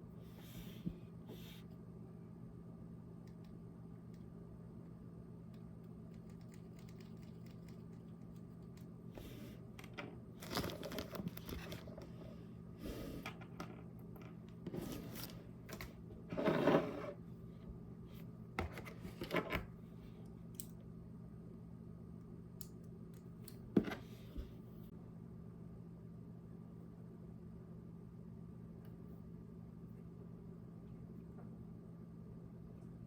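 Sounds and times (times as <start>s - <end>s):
steady low hum: 0.0s - 33.0s
handling noise rustling and scraping: 9.2s - 19.7s.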